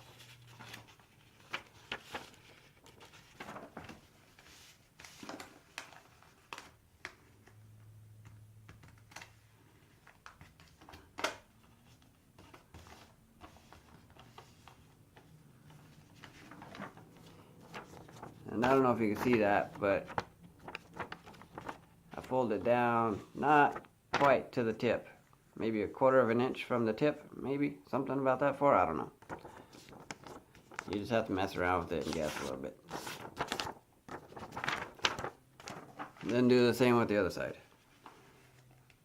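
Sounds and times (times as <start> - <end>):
paper crinkling: 0.0 - 7.6, 8.8 - 22.3, 23.1 - 24.3, 29.2 - 36.5.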